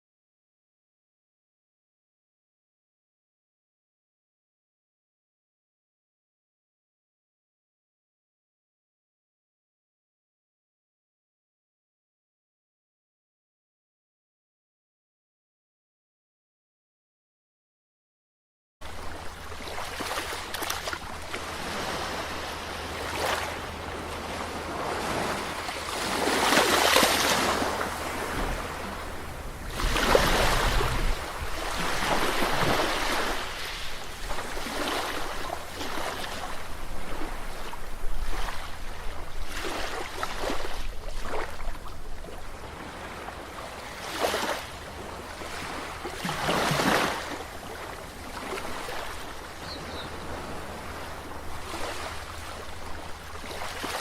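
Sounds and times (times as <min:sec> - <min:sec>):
ocean waves breaking on shore: 0:18.8 - 0:54.0.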